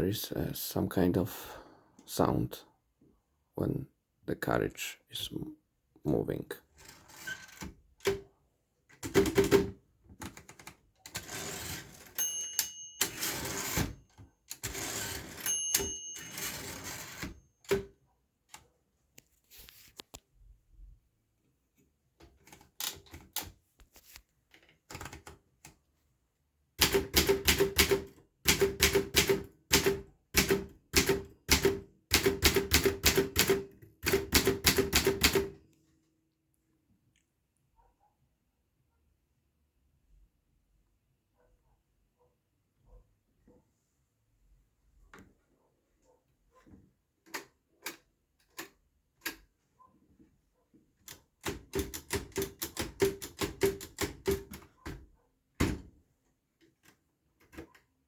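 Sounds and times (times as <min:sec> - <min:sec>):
typewriter keystrokes: 0:09.0 - 0:11.3, 0:26.8 - 0:35.6, 0:51.1 - 0:54.6
typewriter carriage clattering: 0:09.0 - 0:14.0, 0:14.6 - 0:17.8, 0:26.8 - 0:35.5
typewriter bell ringing: 0:11.2 - 0:17.4.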